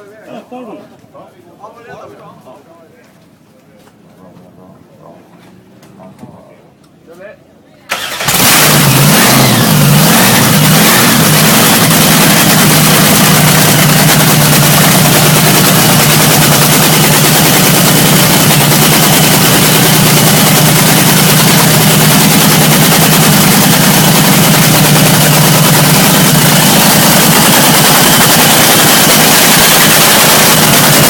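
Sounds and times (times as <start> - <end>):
drag racing engine idling: 8.0 - 31.0.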